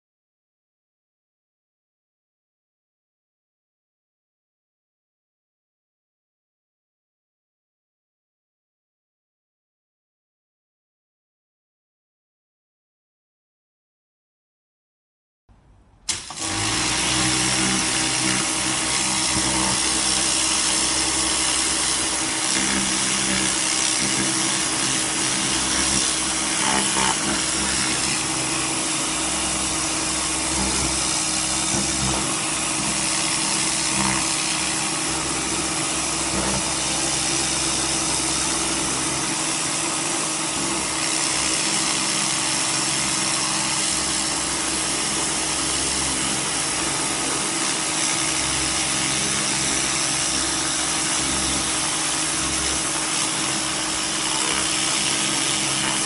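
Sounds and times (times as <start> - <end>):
water spray hissing: 16.1 - 40.3
pressure washer motor hum: 16.1 - 56.0.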